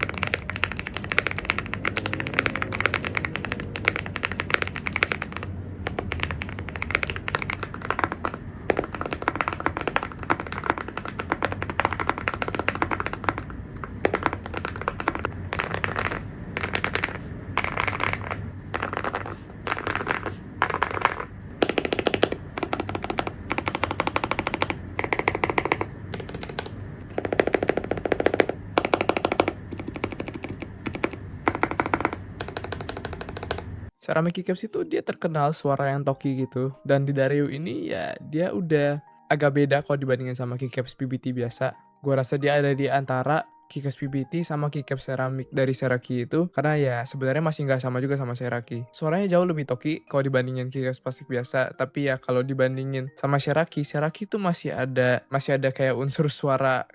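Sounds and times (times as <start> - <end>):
fast mechanical keyboard typing: 0.0 - 33.8.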